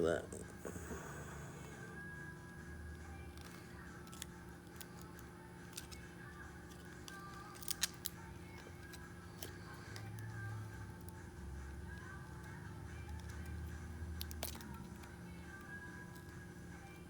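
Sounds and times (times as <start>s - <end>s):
faint steady hum: 0.0s - 17.0s
phone parts clicking and snapping: 3.4s - 6.0s, 6.7s - 10.1s, 13.0s - 15.1s.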